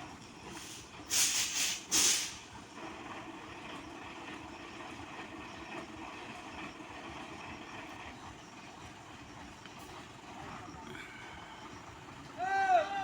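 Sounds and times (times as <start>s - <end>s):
diesel truck engine running: 0.0s - 13.0s
air brakes hissing: 0.4s - 2.6s.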